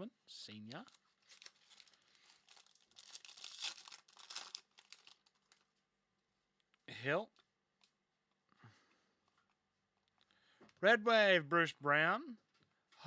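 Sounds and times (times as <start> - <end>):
trading cards and wrapper crinkling: 0.7 - 5.7.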